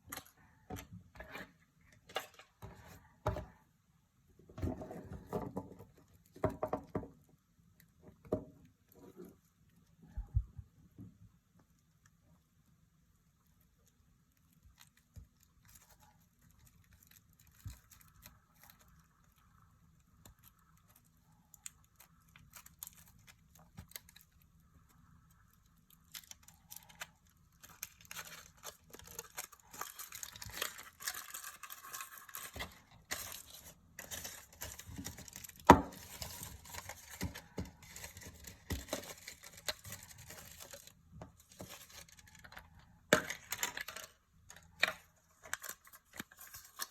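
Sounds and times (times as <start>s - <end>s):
foil wrapper crinkling: 14.5s - 46.9s.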